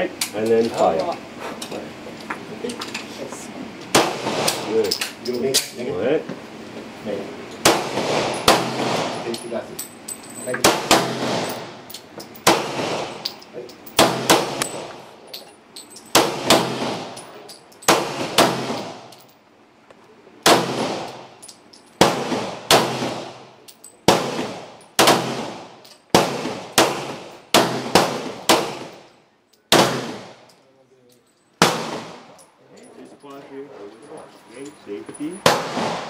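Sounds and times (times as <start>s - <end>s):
pistol shots: 3.9s - 4.7s, 7.6s - 9.3s, 10.6s - 11.8s, 12.4s - 13.3s, 14.0s - 14.9s, 16.1s - 17.2s, 17.9s - 19.1s, 20.4s - 21.3s, 22.0s - 23.4s, 24.0s - 29.0s, 29.7s - 30.4s, 31.6s - 32.3s, 35.4s - 36.0s.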